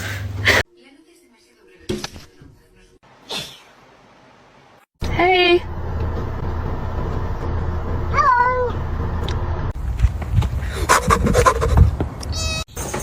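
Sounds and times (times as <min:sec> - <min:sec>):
cat meowing: 0:12.3 - 0:12.6.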